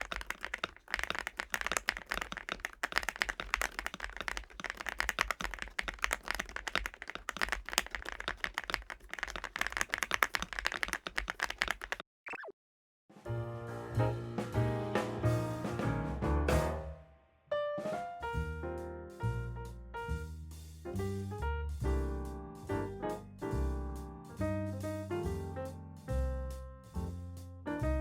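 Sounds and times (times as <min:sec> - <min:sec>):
fast mechanical keyboard typing: 0:00.0 - 0:12.0.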